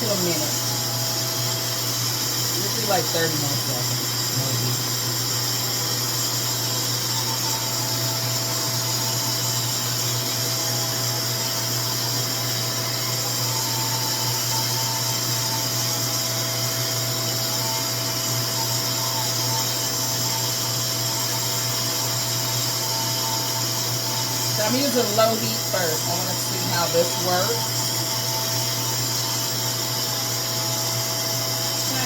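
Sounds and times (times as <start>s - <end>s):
hair dryer rushing air: 24.4s - 27.9s.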